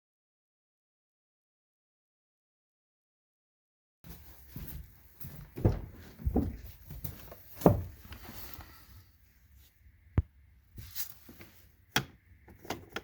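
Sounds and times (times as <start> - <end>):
faint rustling: 4.1 - 9.8.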